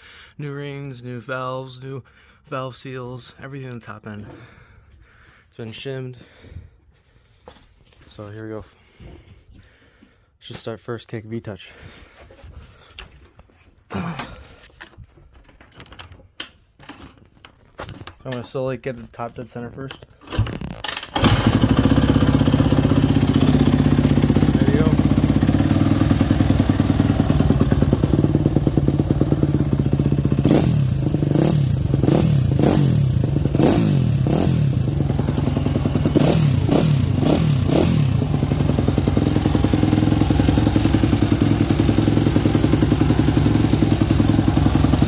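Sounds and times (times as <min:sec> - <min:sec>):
motorcycle engine idling and revving: 0:21.1 - 0:45.0.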